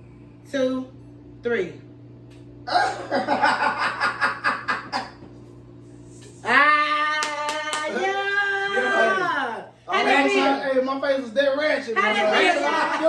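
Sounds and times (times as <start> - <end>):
people laughing: 2.7 - 5.3, 12.3 - 13.0.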